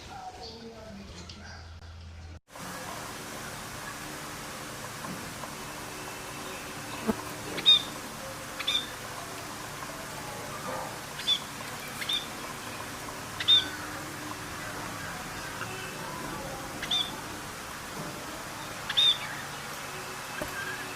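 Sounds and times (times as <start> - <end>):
parrots calling: 6.5 - 9.3, 10.8 - 17.7, 18.6 - 20.9.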